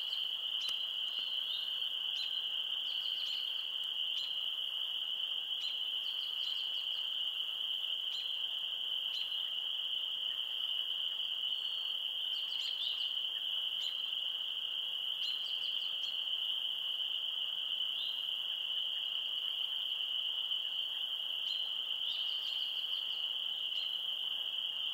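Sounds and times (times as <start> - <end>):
frogs rapid clicking calls: 0.0 - 4.5
frogs trilling: 0.0 - 24.9.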